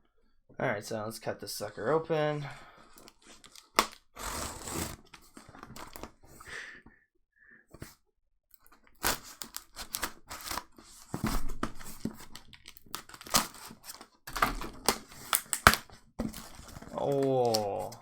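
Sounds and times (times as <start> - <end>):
packing tearing and crinkling: 3.0 - 6.2, 8.9 - 18.0.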